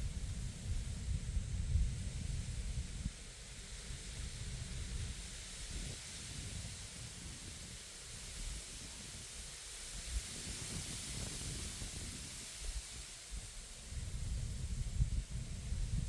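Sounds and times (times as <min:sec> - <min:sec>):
wind gusts striking microphone: 0:10.0 - 0:16.0.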